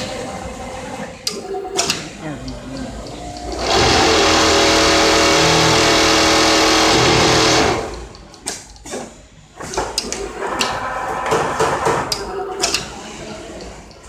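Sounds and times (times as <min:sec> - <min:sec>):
sewing machine whirring: 0:01.2 - 0:08.2.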